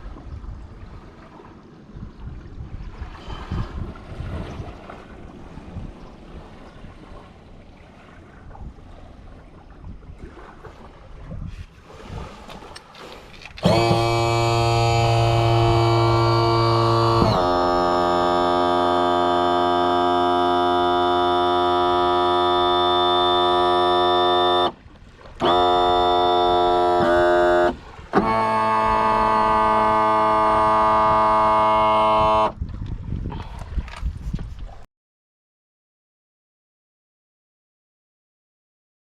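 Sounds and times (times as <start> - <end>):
electric motor whining: 13.6 - 24.8, 25.4 - 32.6.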